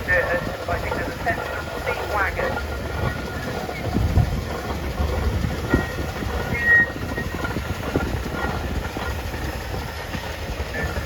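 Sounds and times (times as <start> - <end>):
steam engine rumbling and knocking: 0.0 - 11.0
wind buffeting microphone: 0.0 - 11.0.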